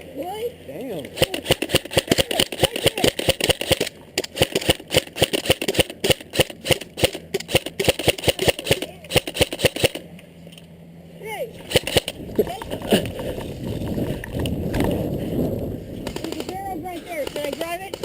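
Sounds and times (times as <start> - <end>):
airsoft gun firing rapid shots: 1.2 - 10.0, 11.7 - 12.2, 16.0 - 18.0.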